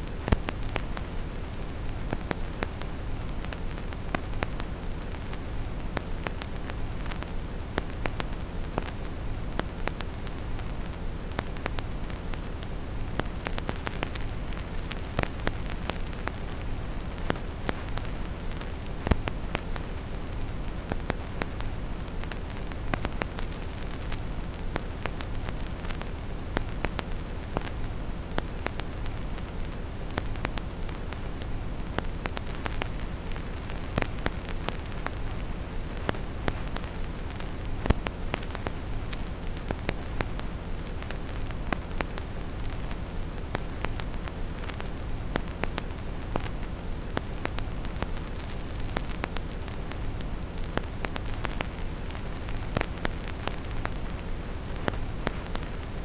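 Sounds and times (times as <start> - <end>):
vinyl record crackle: 0.0 - 56.0.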